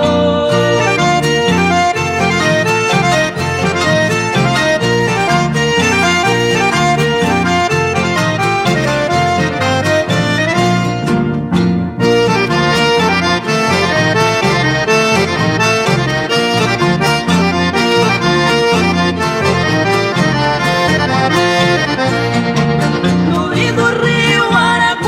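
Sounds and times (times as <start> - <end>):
person singing: 0.0 - 3.4, 23.0 - 25.0
accordion instrumental music: 0.0 - 25.0.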